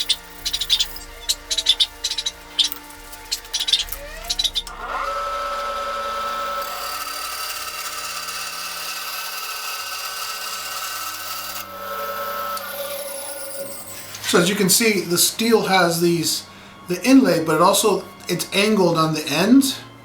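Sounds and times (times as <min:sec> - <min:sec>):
work rubbing against tool: 0:00.0 - 0:14.6
power tool whining: 0:00.0 - 0:19.9
background music: 0:00.0 - 0:20.0.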